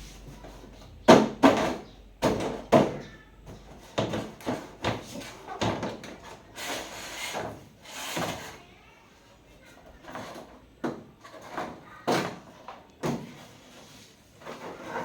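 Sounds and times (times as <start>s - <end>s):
hard objects knocking and clattering: 0.3s - 6.4s.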